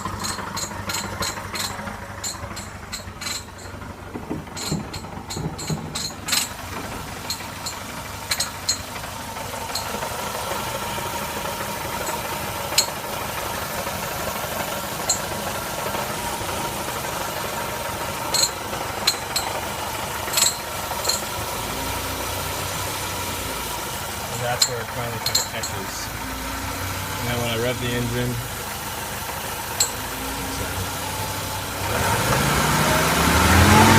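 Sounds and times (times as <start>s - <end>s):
car engine running: 0.0s - 33.9s.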